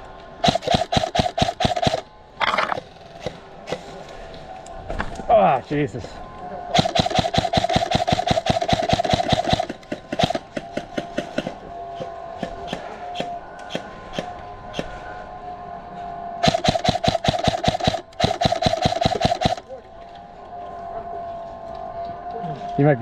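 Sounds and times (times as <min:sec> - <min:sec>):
motor and gearbox whining: 0:00.0 - 0:05.3, 0:05.9 - 0:23.0
airsoft gun rapid bursts: 0:00.4 - 0:02.0, 0:06.8 - 0:11.6, 0:16.4 - 0:19.7
single airsoft shots: 0:00.4 - 0:02.0, 0:06.8 - 0:11.5, 0:16.4 - 0:19.6.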